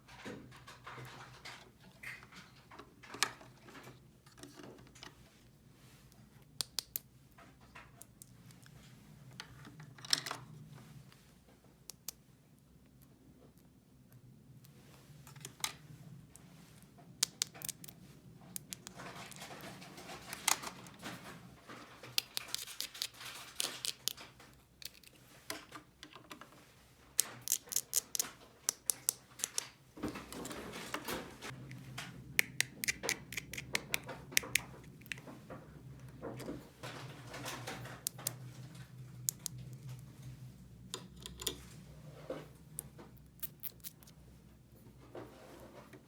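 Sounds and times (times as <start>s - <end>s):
packaging rustling and scraping: 18.7s - 25.8s
plastic toy pieces clicking: 22.2s - 24.2s, 27.4s - 29.7s, 32.4s - 35.2s.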